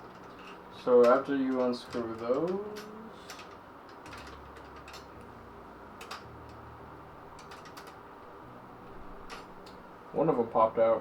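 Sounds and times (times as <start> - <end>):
small metal clicks and ticks: 0.0 - 5.3, 6.0 - 6.6, 7.4 - 8.0
faint low hum: 0.0 - 11.0.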